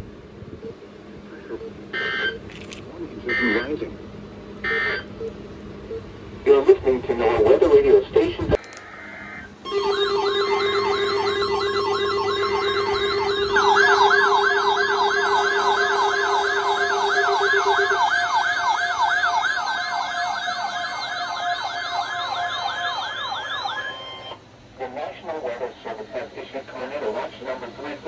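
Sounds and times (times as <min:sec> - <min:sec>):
electronic siren yelping: 0:01.6 - 0:02.4, 0:03.3 - 0:03.7, 0:04.6 - 0:05.2, 0:08.4 - 0:24.4
fast siren yelp: 0:04.7 - 0:05.1, 0:09.1 - 0:24.4
steady low tone: 0:09.6 - 0:19.4.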